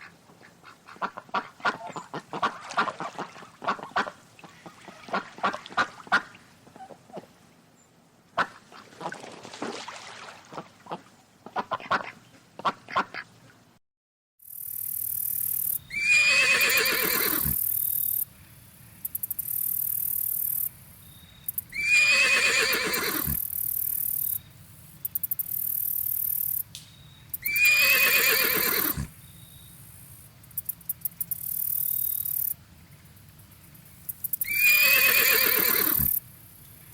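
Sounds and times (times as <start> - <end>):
horse whinnying: 15.9 - 17.6, 21.7 - 23.4, 27.4 - 29.1, 34.4 - 36.2.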